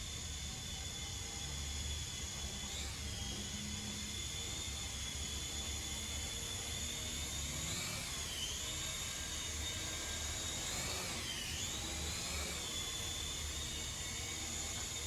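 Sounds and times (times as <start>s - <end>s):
toy helicopter rotor whine: 0.0s - 15.0s.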